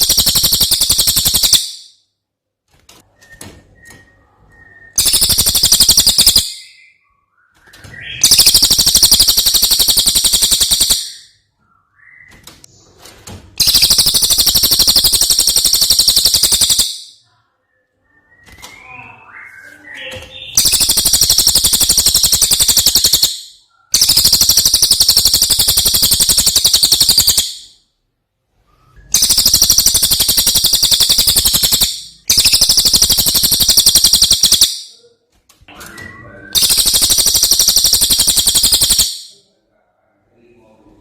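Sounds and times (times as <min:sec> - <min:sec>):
songbird high-pitched trills: 0:00.0 - 0:02.0, 0:04.7 - 0:07.1, 0:08.1 - 0:11.3, 0:13.6 - 0:17.2, 0:18.2 - 0:27.7, 0:29.1 - 0:34.9, 0:36.6 - 0:39.4.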